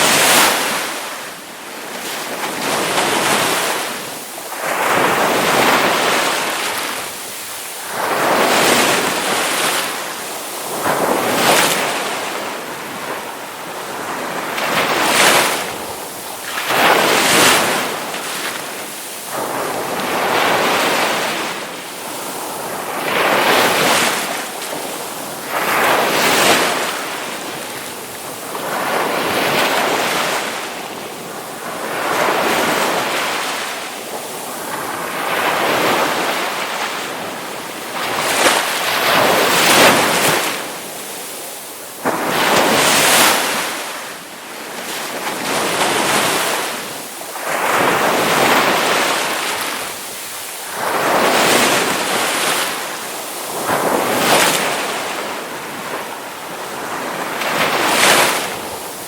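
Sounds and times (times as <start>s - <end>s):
ocean waves breaking: 0.0s - 59.0s.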